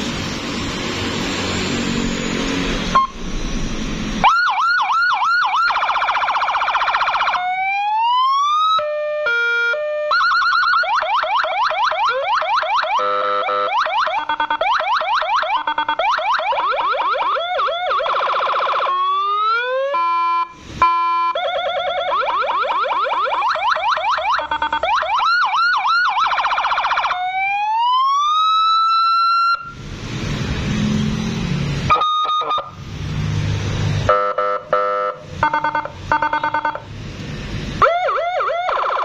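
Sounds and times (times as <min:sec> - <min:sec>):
loud rushing noise: 0:00.0 - 0:04.4, 0:29.6 - 0:31.9, 0:32.7 - 0:34.1, 0:36.8 - 0:37.8
electronic siren wailing and yelping: 0:02.8 - 0:29.8, 0:31.9 - 0:32.8, 0:34.1 - 0:36.9, 0:37.8 - 0:39.0
brief steady tone: 0:02.9 - 0:03.8.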